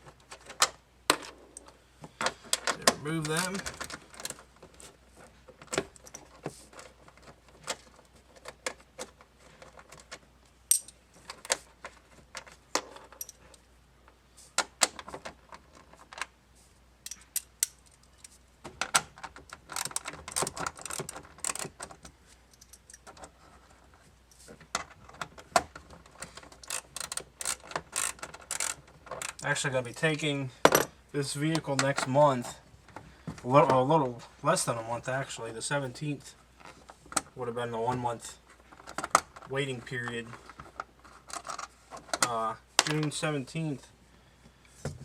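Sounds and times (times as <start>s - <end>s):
socket wrench and bolts clinking: 10.7s - 11.0s, 13.1s - 13.4s, 17.0s - 17.9s.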